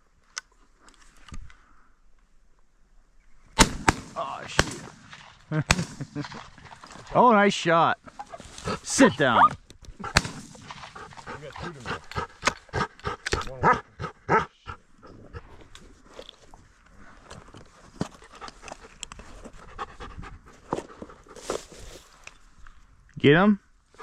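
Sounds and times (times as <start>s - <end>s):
dog panting: 8.1s - 15.6s, 18.0s - 21.6s.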